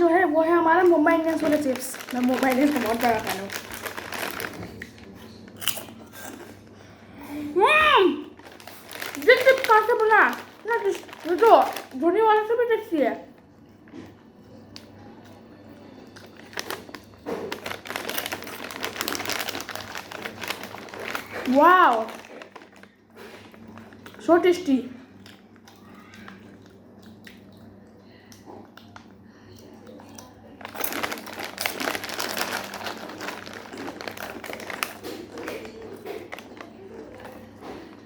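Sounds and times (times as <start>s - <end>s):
crunching crispy chips: 0.7s - 6.6s, 8.4s - 12.1s, 16.1s - 24.3s, 30.0s - 38.0s.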